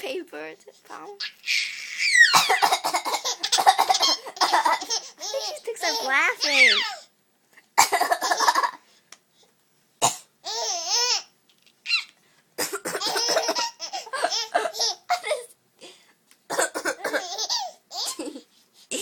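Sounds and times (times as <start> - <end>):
baby laughing: 1.2 - 7.0, 8.0 - 8.8, 10.4 - 12.2, 13.0 - 15.5, 17.0 - 19.0
child coughing: 2.2 - 7.0, 7.8 - 8.8, 12.6 - 15.5, 16.5 - 19.0.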